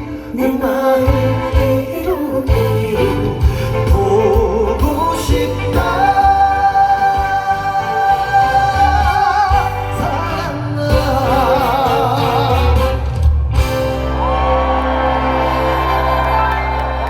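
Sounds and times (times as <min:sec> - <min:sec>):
man singing with heavy vibrato: 0:00.0 - 0:13.2
band accompaniment: 0:00.0 - 0:17.0.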